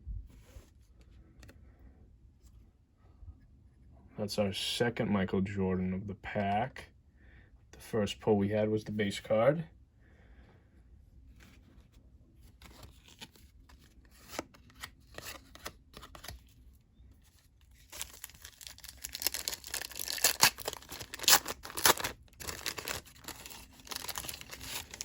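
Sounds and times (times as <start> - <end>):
wrapper tearing and crinkling: 17.7 - 25.0.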